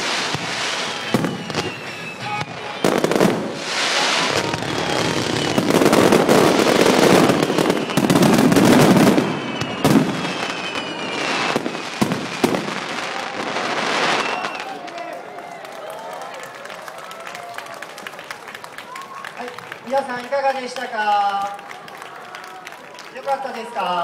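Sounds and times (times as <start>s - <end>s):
falling firework whistles: 0.0s - 14.9s
fireworks bangs: 0.0s - 15.2s
fireworks crackling: 0.0s - 17.2s
music: 0.1s - 6.1s.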